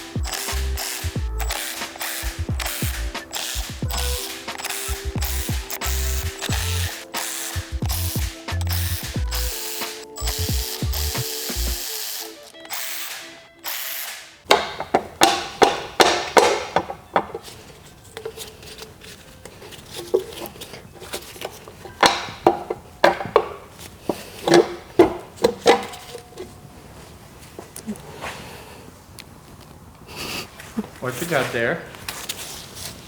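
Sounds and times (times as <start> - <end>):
metal parts clicking and knocking: 0.0 - 26.5
steady tool noise: 0.0 - 26.5.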